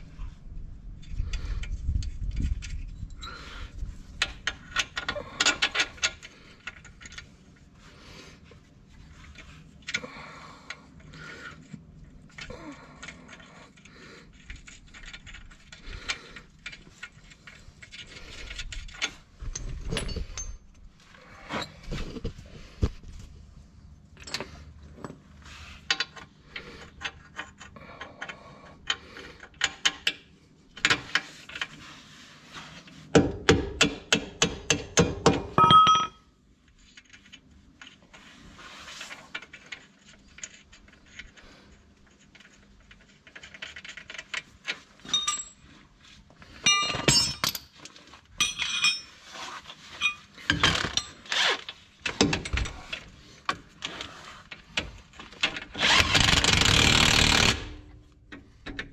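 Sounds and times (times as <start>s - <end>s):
hand tools clinking on metal: 35.6s - 36.2s, 45.0s - 45.6s, 46.6s - 47.7s, 48.4s - 49.2s, 49.9s - 50.3s.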